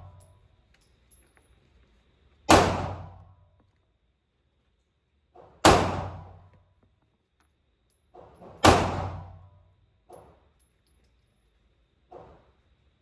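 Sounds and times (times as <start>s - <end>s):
loud pistol shots echoing: 2.5s - 3.2s, 5.6s - 6.4s, 8.6s - 9.4s.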